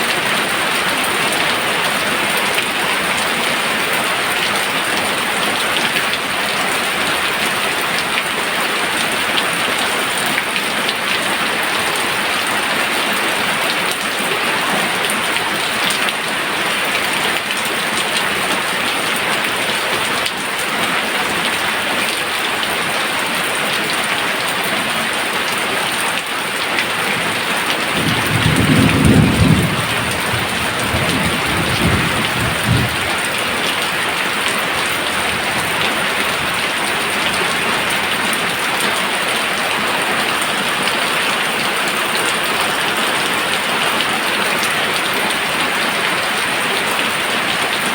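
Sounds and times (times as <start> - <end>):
steady rain: 0.0 - 47.9
thunder rumble: 28.0 - 33.7.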